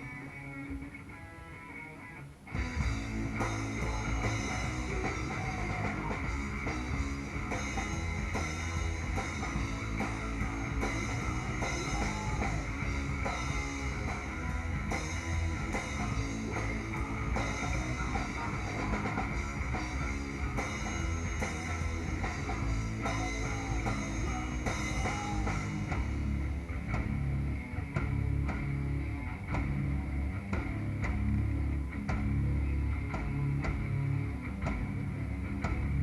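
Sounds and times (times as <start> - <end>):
rock band playing live: 0.0 - 36.0.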